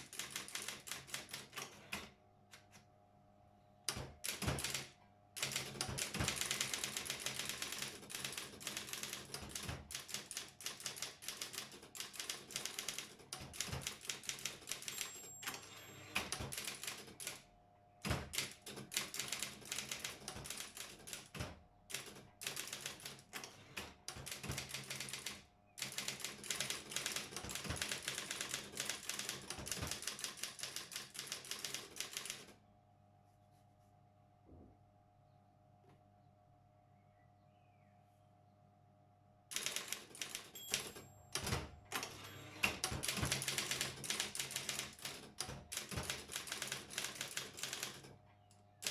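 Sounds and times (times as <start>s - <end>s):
electric typewriter typing: 0.0s - 2.1s, 3.9s - 17.4s, 18.0s - 32.5s, 39.5s - 48.2s.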